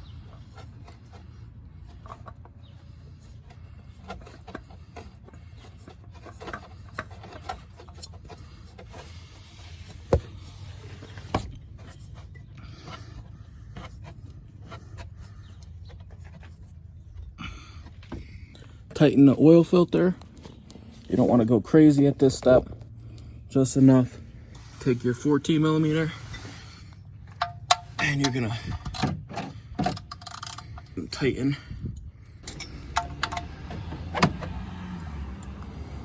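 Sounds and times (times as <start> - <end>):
low steady hum: 0.0 - 34.7
hands scraping metal and plastic: 0.3 - 17.3.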